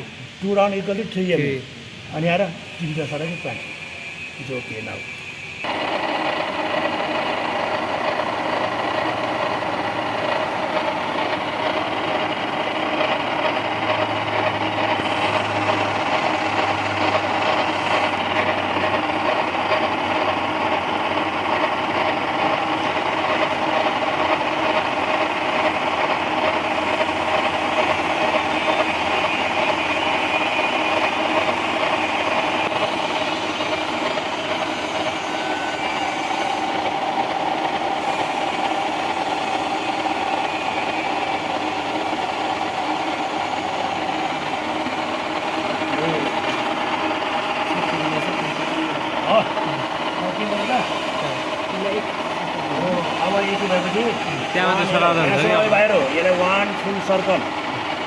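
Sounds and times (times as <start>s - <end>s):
milling machine running: 0.0s - 58.0s
gear cutter cutting metal: 5.6s - 58.0s.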